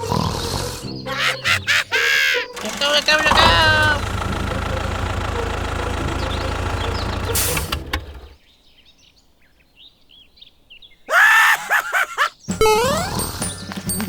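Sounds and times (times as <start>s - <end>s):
small tractor engine running: 2.6s - 8.4s.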